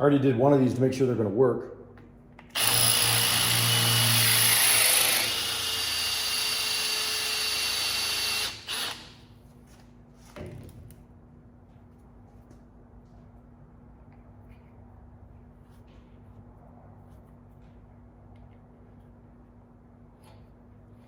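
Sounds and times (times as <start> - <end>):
electric drill boring: 2.5 - 9.2.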